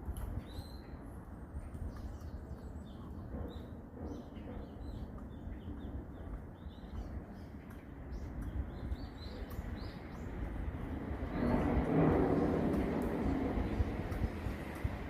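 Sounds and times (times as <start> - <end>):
low steady rumble: 10.1 - 15.0.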